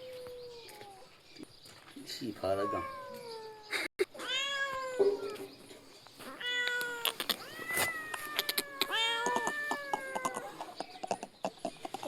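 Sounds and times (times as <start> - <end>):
cat yowling: 6.4 - 10.5.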